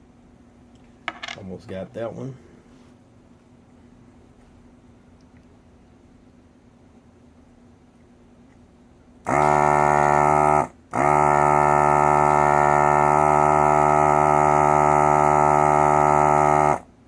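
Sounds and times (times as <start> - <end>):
vacuum pump buzzing: 9.2 - 17.0.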